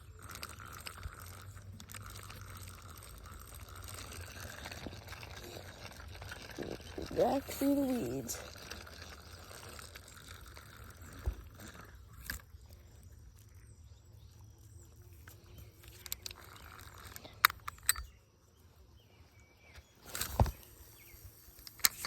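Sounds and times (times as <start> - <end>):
fishing reel whirring: 0.0 - 13.1, 15.2 - 18.2, 20.0 - 22.0
reel clicks: 0.1 - 12.8, 15.2 - 18.1, 20.0 - 22.0.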